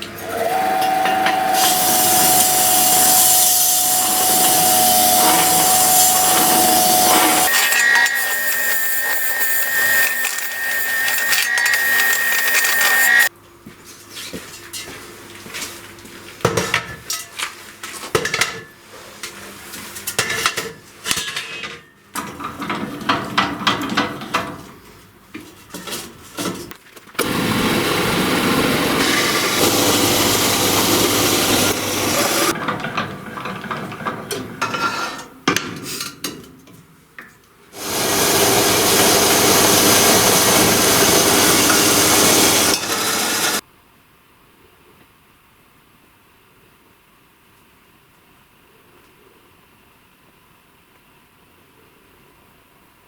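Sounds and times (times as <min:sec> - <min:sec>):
power tool running: 0:00.0 - 0:13.3, 0:27.2 - 0:32.6, 0:37.8 - 0:43.6
metal parts knocking and clattering: 0:10.0 - 0:13.2.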